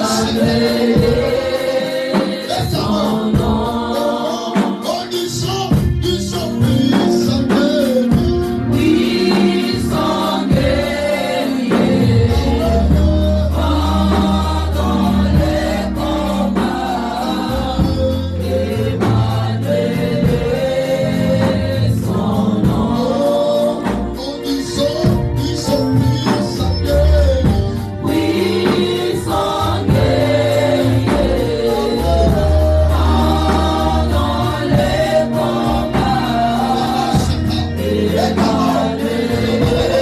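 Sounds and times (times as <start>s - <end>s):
choir singing gospel music: 0.0s - 40.0s
low bass line: 11.8s - 40.0s.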